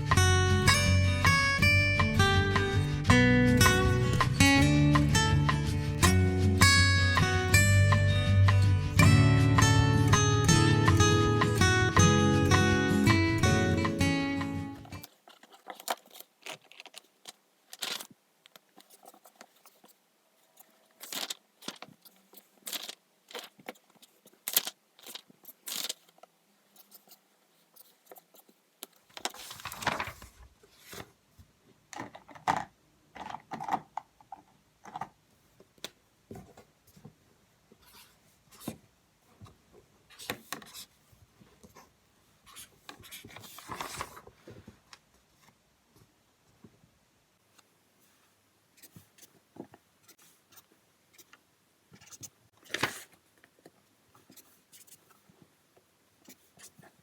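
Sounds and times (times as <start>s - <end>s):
paper rustling: 14.9s - 31.2s, 42.5s - 44.8s, 52.0s - 55.4s.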